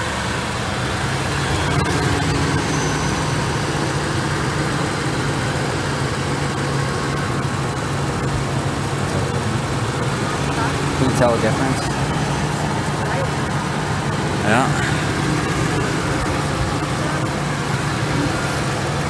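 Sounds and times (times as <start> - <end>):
car engine idling: 0.0 - 19.0.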